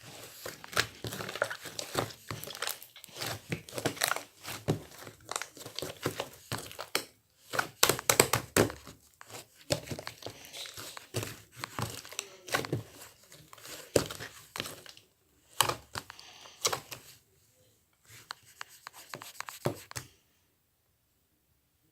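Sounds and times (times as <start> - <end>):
slime squelching and popping: 0.4 - 15.0.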